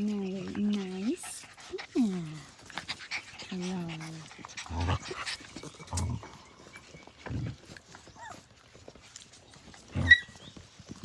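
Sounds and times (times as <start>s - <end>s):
puppies scuffling: 0.0s - 11.0s
puppy squeaking: 10.0s - 10.6s.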